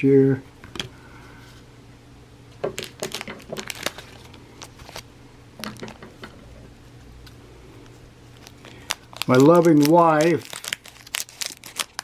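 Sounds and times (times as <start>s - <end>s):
cards and packs rustling: 2.6s - 6.3s, 7.3s - 12.0s.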